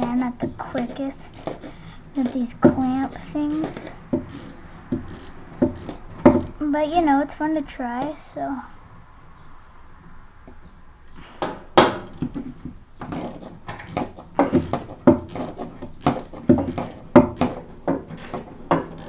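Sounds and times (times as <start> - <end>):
hose clamp clicking and knocking: 0.0 - 6.6, 11.4 - 19.0.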